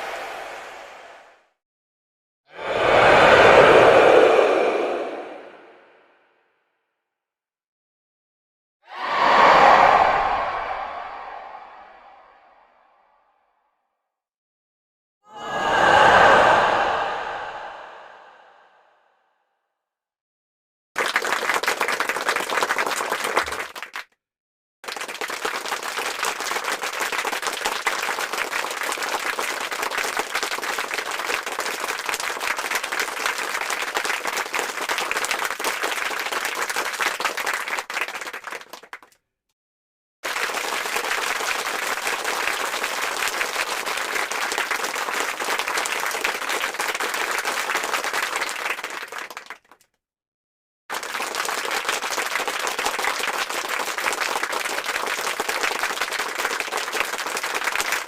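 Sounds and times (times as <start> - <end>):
crowd clapping: 8.9 - 11.6, 21.0 - 24.2, 24.8 - 39.2, 40.2 - 49.9, 50.9 - 58.0.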